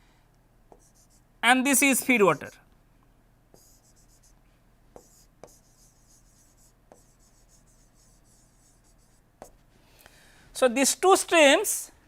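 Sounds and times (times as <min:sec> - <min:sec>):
pen scratching on paper: 0:00.7 - 0:01.2, 0:03.5 - 0:04.4, 0:05.0 - 0:09.6
pen tapping: 0:05.0 - 0:06.2, 0:06.9 - 0:07.3, 0:09.4 - 0:09.6.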